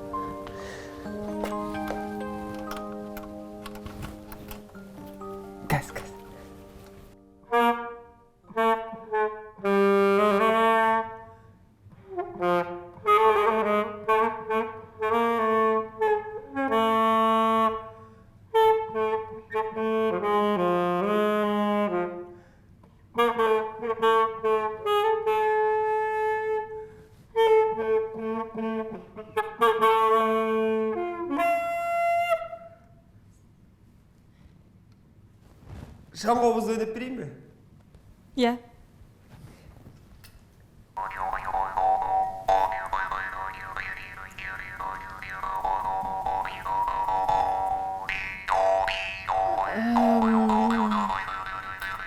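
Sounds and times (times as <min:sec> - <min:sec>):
solo saxophone melody: 0:06.1 - 0:11.3, 0:12.0 - 0:17.9, 0:18.5 - 0:22.3, 0:23.2 - 0:26.8, 0:27.4 - 0:32.6.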